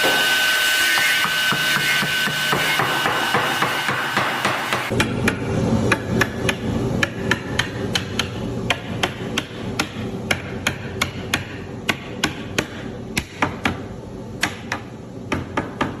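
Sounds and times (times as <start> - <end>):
hammering on wood: 0.9 - 13.8, 14.4 - 16.0
steady low hum: 4.8 - 16.0.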